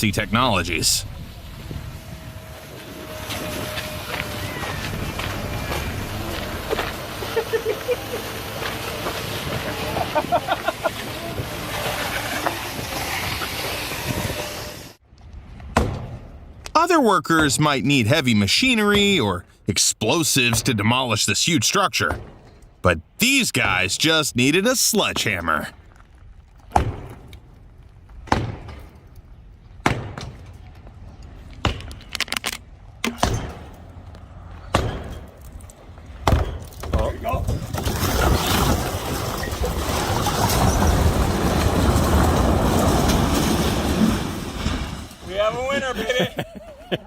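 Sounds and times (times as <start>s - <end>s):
wind buffeting microphone: 1.0s - 7.2s.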